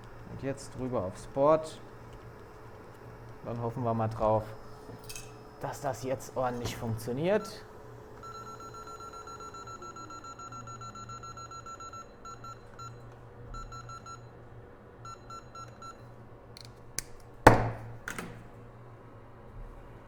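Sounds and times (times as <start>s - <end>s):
loud sharp knock: 17.5s - 18.0s.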